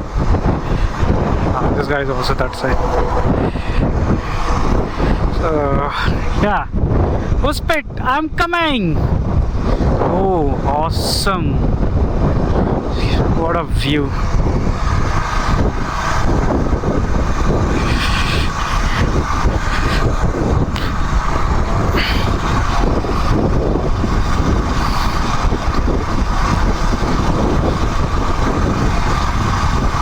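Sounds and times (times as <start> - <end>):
motorcycle engine: 0.0 - 7.0, 14.1 - 30.0
wind rushing over microphone: 0.0 - 30.0.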